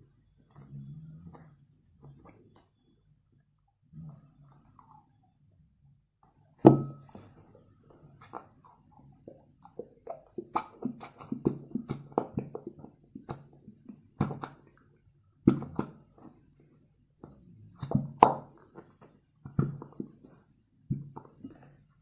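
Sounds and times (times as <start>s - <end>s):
slime ingredients being mixed: 6.3s - 22.0s.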